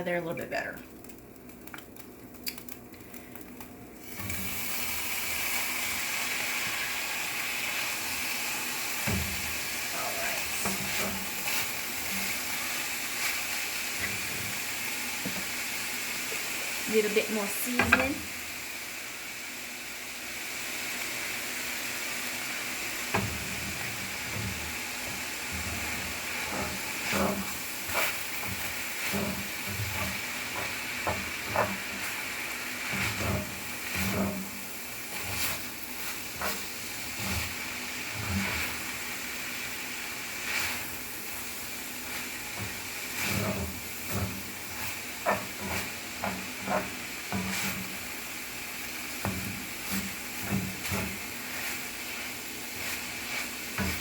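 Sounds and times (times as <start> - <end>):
meat sizzling in a frying pan: 0.9 - 54.0
utensil scraping a pan: 10.2 - 15.5, 23.1 - 39.1, 40.4 - 48.2, 49.0 - 54.0.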